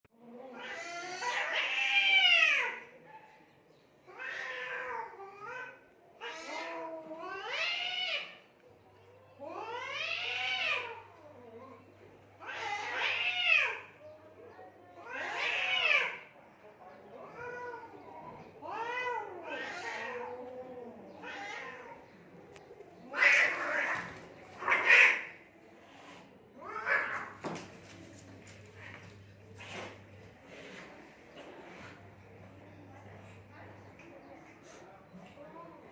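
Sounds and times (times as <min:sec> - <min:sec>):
cats hissing and screeching: 0:00.2 - 0:03.0, 0:04.0 - 0:08.6, 0:09.4 - 0:14.1, 0:15.0 - 0:16.4, 0:17.2 - 0:35.4
cats yowling: 0:00.4 - 0:02.9, 0:04.1 - 0:08.5, 0:09.4 - 0:11.8, 0:12.4 - 0:14.0, 0:15.0 - 0:16.4, 0:17.2 - 0:22.4, 0:23.0 - 0:25.5, 0:26.5 - 0:27.4.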